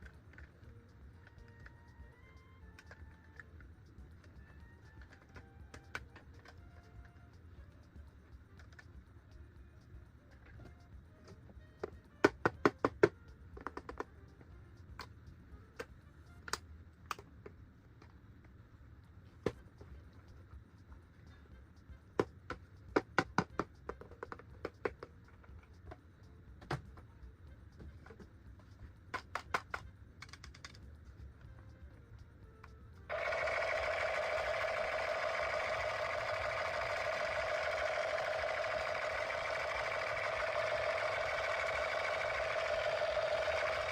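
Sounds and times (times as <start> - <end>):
plastic toy clicks: 4.2 - 7.2, 29.2 - 30.8, 33.1 - 43.9.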